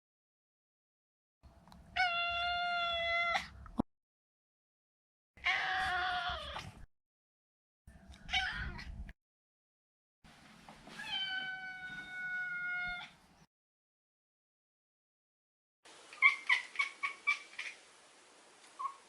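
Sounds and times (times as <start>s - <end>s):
cat meowing: 2.0s - 3.5s, 5.4s - 6.6s, 8.3s - 8.9s, 11.0s - 13.2s.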